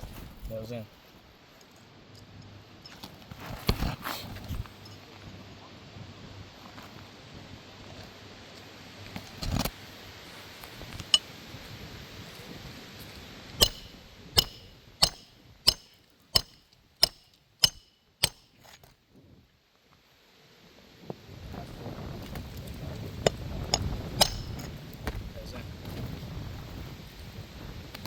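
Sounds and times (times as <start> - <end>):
hammer striking a nail: 13.6 - 18.5, 23.3 - 24.7.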